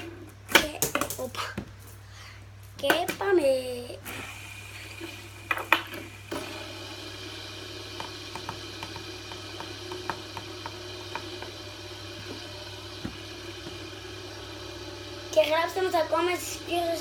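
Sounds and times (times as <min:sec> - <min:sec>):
fidget spinners whirring: 0:15.0 - 0:17.0.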